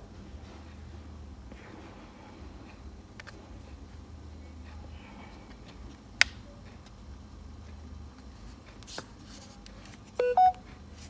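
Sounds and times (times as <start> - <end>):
two-note electronic beep: 10.2 - 10.6.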